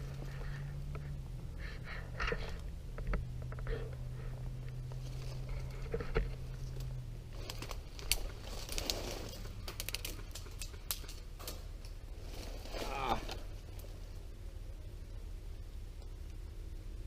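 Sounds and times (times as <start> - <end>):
rustling: 0.0 - 14.3
low steady hum: 0.0 - 17.0.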